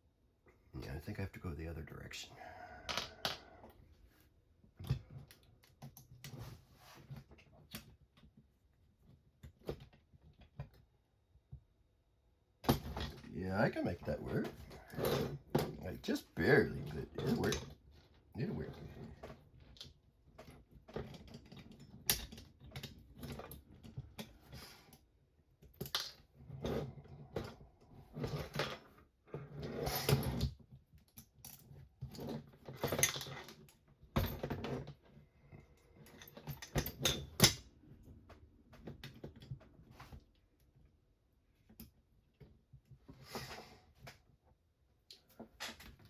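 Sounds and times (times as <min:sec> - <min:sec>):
small parts clicking and rattling: 0:29.7 - 0:35.0, 0:35.8 - 0:37.7.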